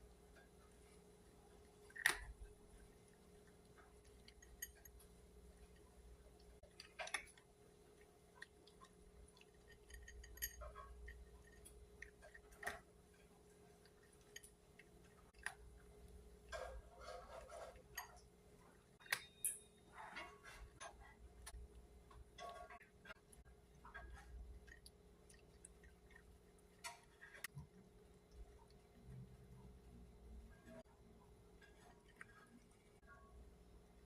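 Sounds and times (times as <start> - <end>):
cat chewing food: 0.0 - 19.1, 20.7 - 34.0.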